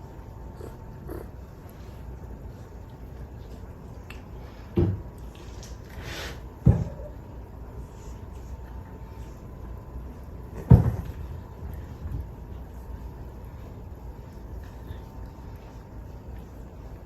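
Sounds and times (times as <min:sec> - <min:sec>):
low steady rumble: 0:06.5 - 0:17.0.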